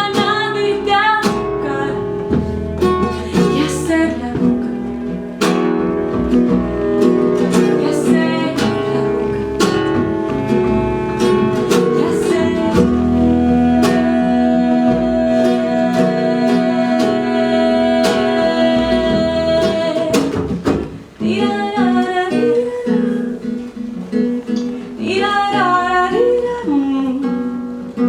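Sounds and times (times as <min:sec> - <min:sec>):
person singing with vibrato: 0:00.0 - 0:05.6, 0:07.1 - 0:23.6
plucked acoustic guitar: 0:00.0 - 0:28.0
sustained low notes: 0:00.8 - 0:20.2.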